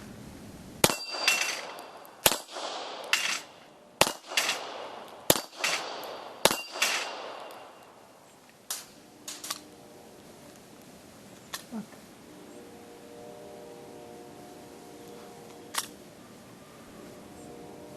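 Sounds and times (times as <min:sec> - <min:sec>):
steel plate clanging: 0:00.8 - 0:02.1, 0:03.0 - 0:03.6, 0:05.3 - 0:07.9
pistol shots: 0:00.8 - 0:08.0.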